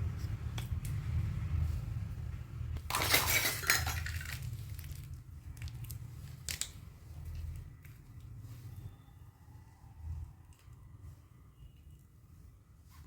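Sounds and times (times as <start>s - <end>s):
plastic packaging rustling: 2.9s - 7.4s.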